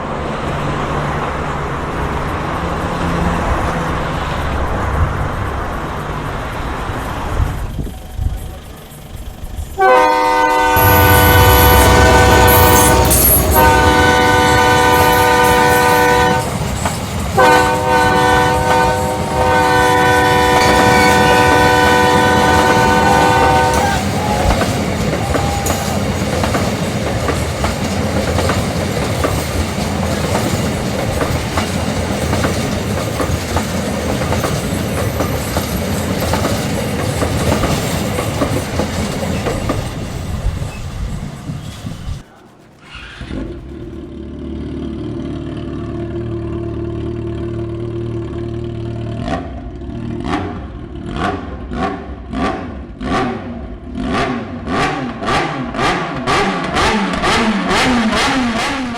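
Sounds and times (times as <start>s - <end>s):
wheels clacking over rail joints: 0.0s - 44.4s
train rumbling past: 0.0s - 58.9s
train horn blasts: 9.8s - 16.7s, 17.4s - 26.1s.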